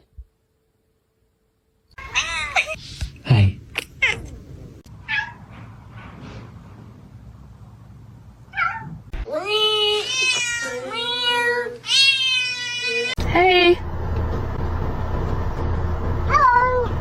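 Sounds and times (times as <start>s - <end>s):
kittens meowing: 3.9s - 4.3s.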